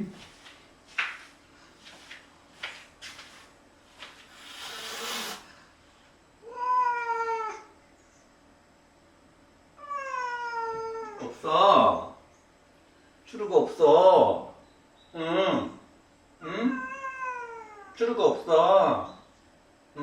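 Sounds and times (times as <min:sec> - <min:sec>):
cat meowing: 0:06.4 - 0:07.7, 0:09.8 - 0:11.2, 0:16.7 - 0:18.0.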